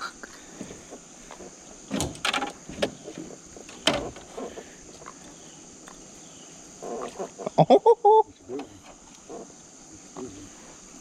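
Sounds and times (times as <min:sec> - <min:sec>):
high drone of insects: 0:00.0 - 0:11.0
sharp knocks and clatters: 0:01.4 - 0:05.2.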